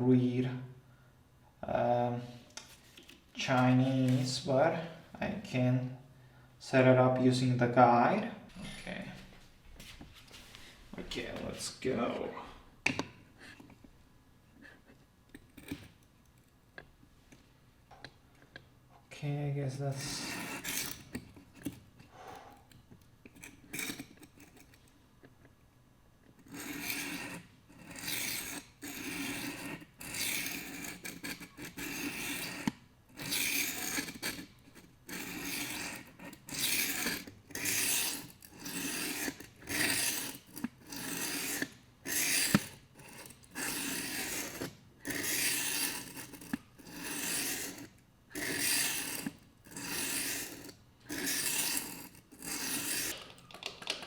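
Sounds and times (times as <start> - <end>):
stone scraping knife edge: 14.6 - 16.9, 19.9 - 25.5, 26.2 - 53.3.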